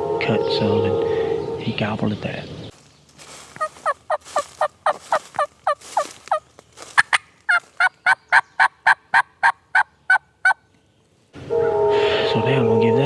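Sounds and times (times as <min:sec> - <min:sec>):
turkey call yelps: 0:03.2 - 0:10.6.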